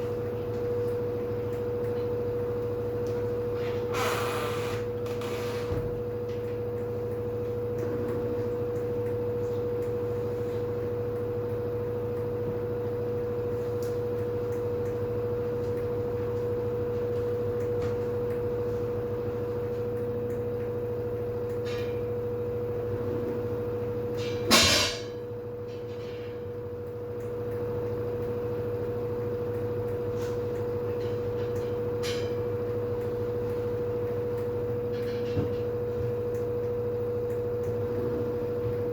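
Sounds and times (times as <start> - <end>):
washing machine spinning: 0.0 - 38.9.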